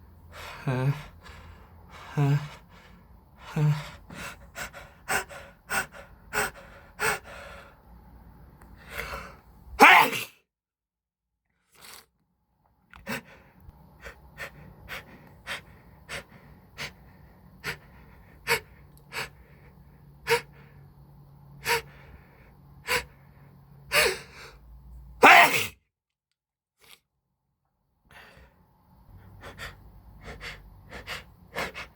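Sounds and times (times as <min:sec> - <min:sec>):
loud sneeze: 0:09.8 - 0:10.4, 0:25.2 - 0:25.8.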